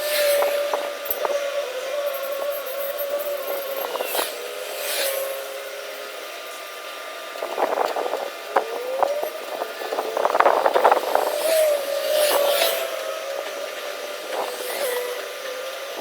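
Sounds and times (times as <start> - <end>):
machine whine: 0.0 - 16.0.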